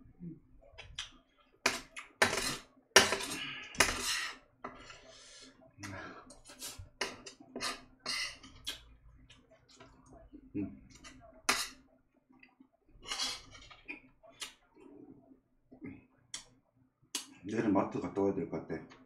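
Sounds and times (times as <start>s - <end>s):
cutlery tapping: 1.6s - 4.1s
cutlery scraping a dish: 1.6s - 5.1s, 6.5s - 8.6s, 11.0s - 11.8s, 13.0s - 13.9s.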